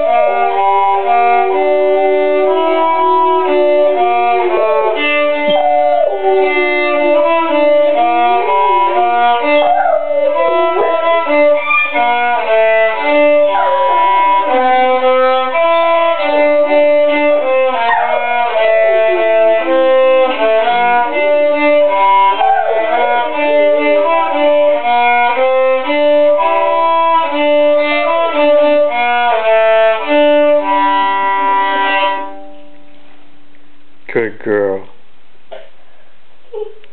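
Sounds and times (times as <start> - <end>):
dog howling: 0.0 - 16.4, 17.0 - 28.5
violin slow melody: 0.0 - 33.4.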